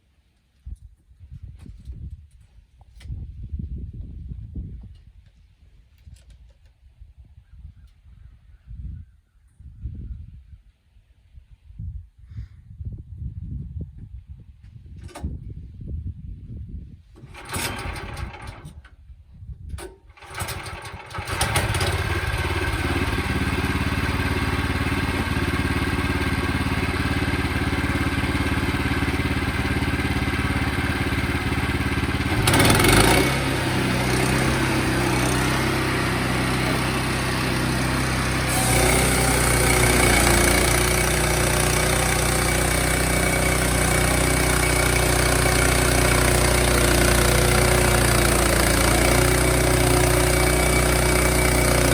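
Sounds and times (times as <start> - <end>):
gasoline engine running: 17.2 - 18.7, 20.2 - 51.9.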